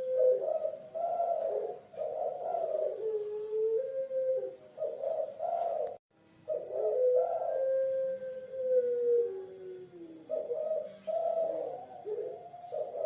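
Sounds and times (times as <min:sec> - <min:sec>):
dove cooing: 0:00.0 - 0:13.0.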